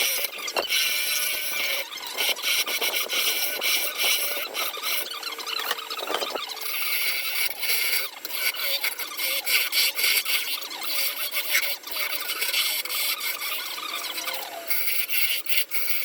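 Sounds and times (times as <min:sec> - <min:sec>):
scratchy scraping on spinning wood: 0:00.0 - 0:16.0.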